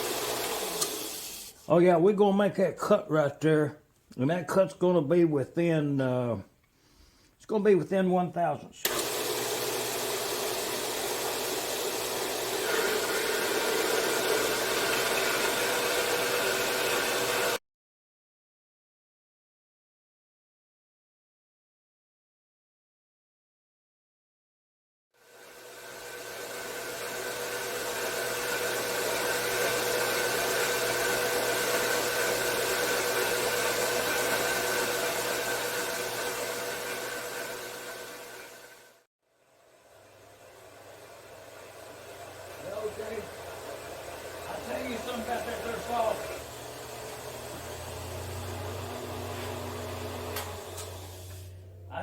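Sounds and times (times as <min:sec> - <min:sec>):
bandsaw motor and blade: 0:00.0 - 0:01.6, 0:08.8 - 0:17.6, 0:25.2 - 0:39.1, 0:41.0 - 0:51.7.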